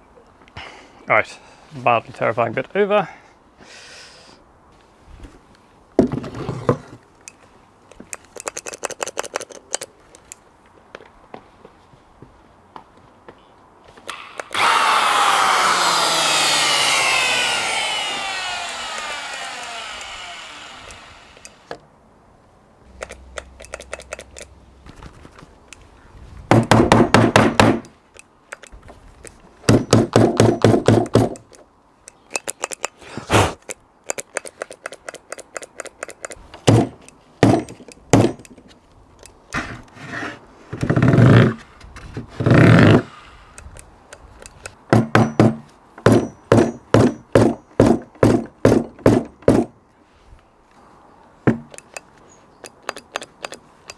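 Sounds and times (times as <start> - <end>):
wood knocking: 44.9 - 49.7, 51.5 - 51.7.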